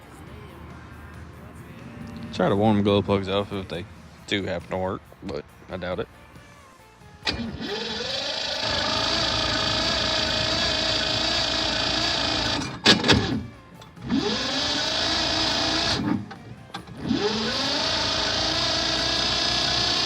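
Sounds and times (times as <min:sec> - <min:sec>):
starter motor cranking engine: 0:07.2 - 0:20.0.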